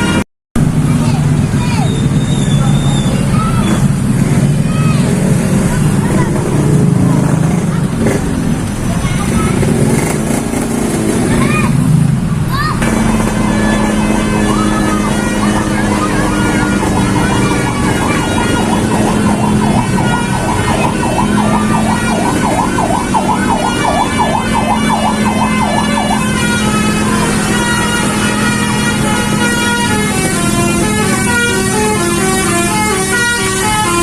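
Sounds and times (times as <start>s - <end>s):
musical bus horn warbling: 0.0s - 0.2s, 12.8s - 34.0s.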